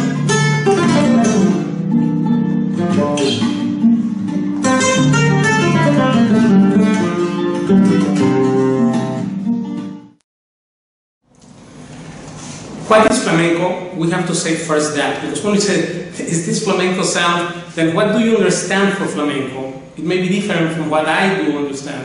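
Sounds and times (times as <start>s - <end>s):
flamenco guitar playing: 0.0s - 10.2s.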